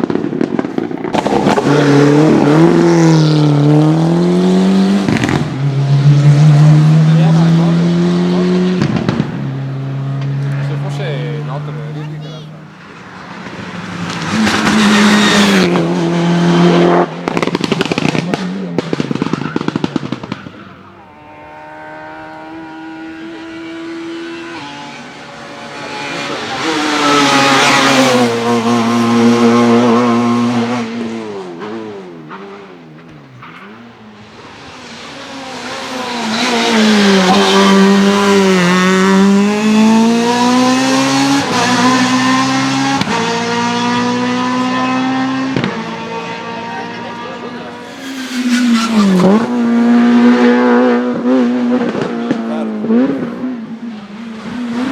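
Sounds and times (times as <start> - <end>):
exhaust popping and crackling: 0.0 - 21.0
racing car engines revving: 0.0 - 54.9.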